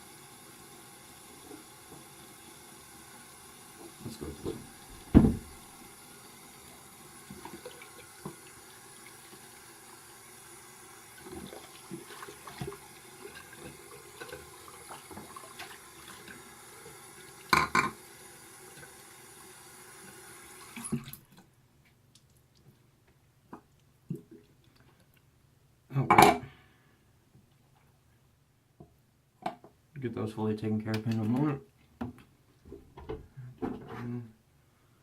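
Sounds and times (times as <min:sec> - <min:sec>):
sink tap running: 0:01.1 - 0:21.2.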